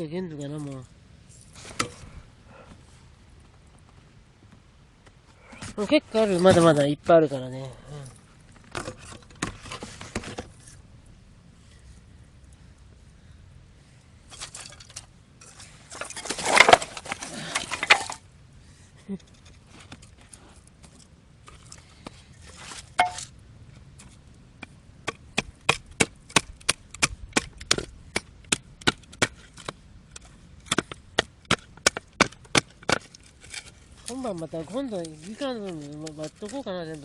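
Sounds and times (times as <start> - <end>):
wood splintering: 15.9 - 18.2, 30.6 - 37.0.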